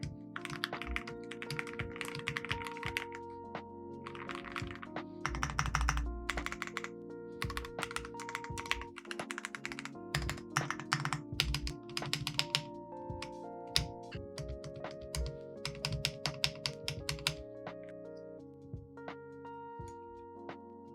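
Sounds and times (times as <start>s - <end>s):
mechanical keyboard typing: 0.0s - 3.3s, 4.0s - 17.4s
background music: 0.0s - 20.9s.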